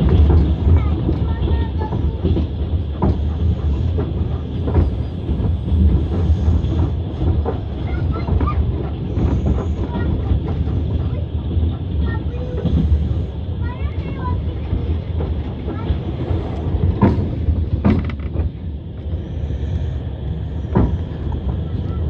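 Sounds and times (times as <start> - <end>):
train wheels rumbling: 0.0 - 22.0
knocks over rail joints: 16.8 - 18.6.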